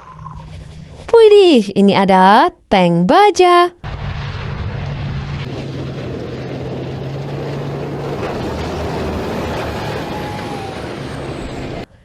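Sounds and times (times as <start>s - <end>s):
water rushing: 4.5s - 11.9s.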